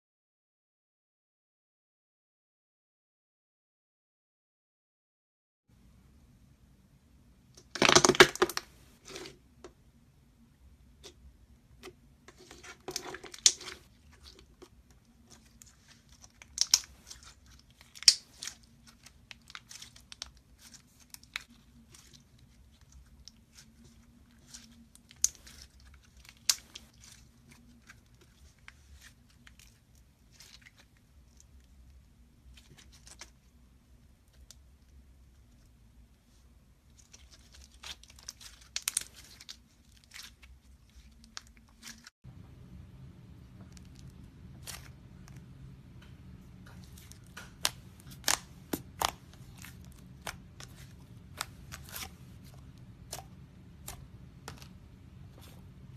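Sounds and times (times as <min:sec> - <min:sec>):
slime crackling and popping: 0:15.2 - 0:31.4, 0:46.8 - 0:54.9.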